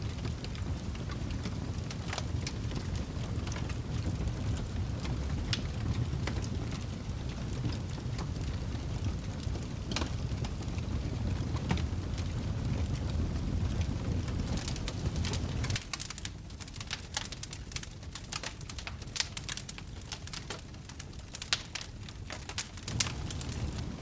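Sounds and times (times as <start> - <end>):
wood fire crackling and popping: 0.0 - 24.0
low rumble: 22.8 - 24.0.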